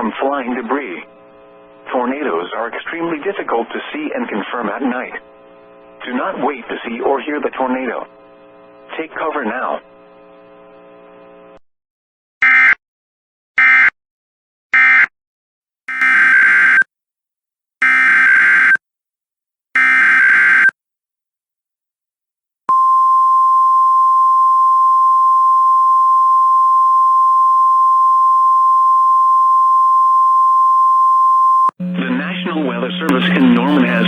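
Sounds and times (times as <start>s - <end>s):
steady attention tone: 31.3s - 34.0s
buzzy digital data bursts: 33.1s - 34.0s.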